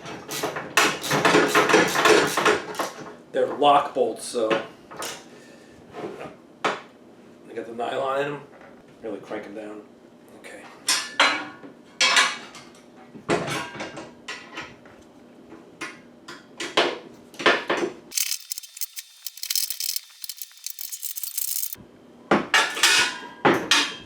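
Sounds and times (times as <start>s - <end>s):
wrench and bolts clinking: 18.1s - 21.8s.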